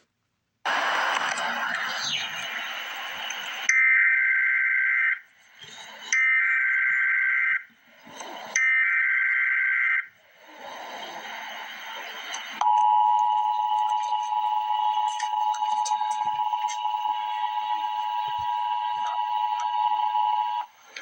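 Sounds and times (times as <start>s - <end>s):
two-tone attention signal: 12.6s - 20.7s.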